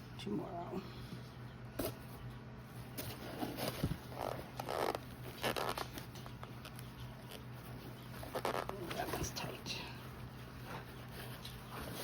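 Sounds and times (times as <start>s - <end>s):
faint low hum: 0.0s - 12.0s
eggs rustling in carton: 1.8s - 12.0s.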